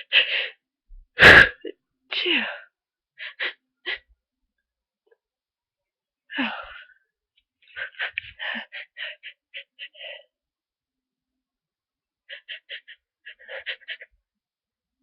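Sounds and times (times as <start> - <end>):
person sneezing loudly: 1.2 - 2.5.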